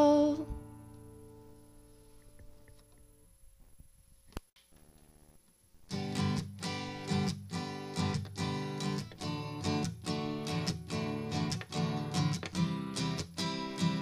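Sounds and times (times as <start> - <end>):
strummed acoustic guitar: 5.9 - 14.0.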